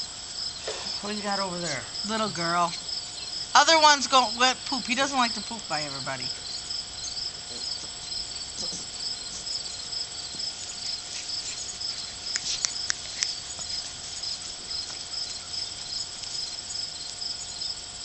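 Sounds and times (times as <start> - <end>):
insects chirping: 0.0 - 18.0
sharp clicks: 12.3 - 13.4.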